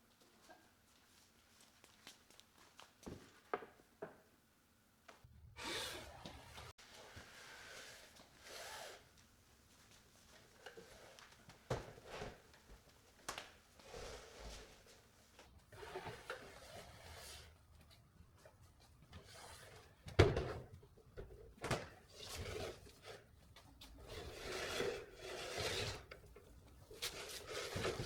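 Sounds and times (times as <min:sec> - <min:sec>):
wooden pieces rubbing and sliding: 0:24.0 - 0:26.2.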